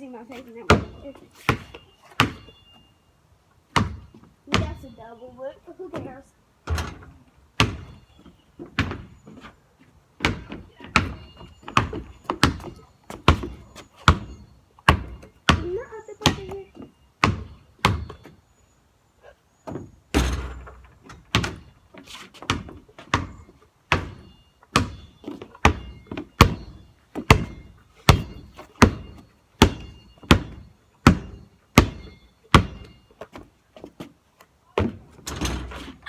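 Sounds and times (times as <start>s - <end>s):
basketball bouncing on hard ground: 0.6s - 2.8s, 3.7s - 5.1s, 5.8s - 9.5s, 10.2s - 18.4s, 19.7s - 33.9s, 34.8s - 35.9s.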